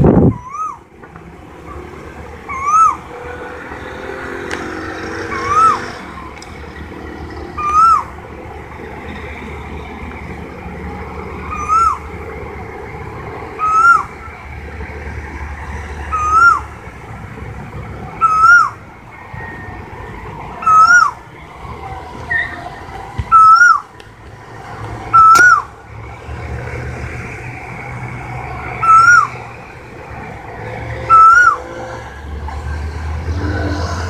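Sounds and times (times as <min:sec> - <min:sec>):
steady background noise: 0:00.0 - 0:34.0
koel whistled calls: 0:00.4 - 0:00.8, 0:02.5 - 0:03.0, 0:07.6 - 0:08.1, 0:11.4 - 0:12.1, 0:13.5 - 0:14.4, 0:16.0 - 0:16.7, 0:18.2 - 0:18.8, 0:20.6 - 0:21.2, 0:23.3 - 0:23.9, 0:25.1 - 0:25.7, 0:28.7 - 0:29.4, 0:31.0 - 0:31.8.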